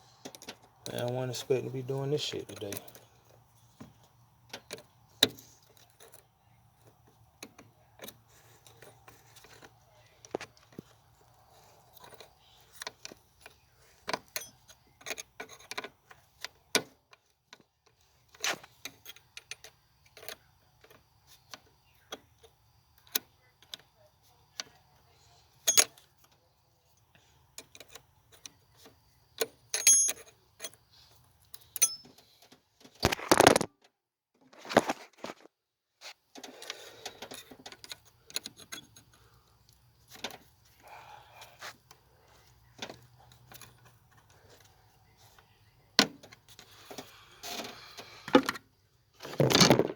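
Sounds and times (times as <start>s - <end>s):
hand tools clinking: 29.7s - 30.8s, 31.6s - 32.3s
metal parts clattering: 49.2s - 49.9s.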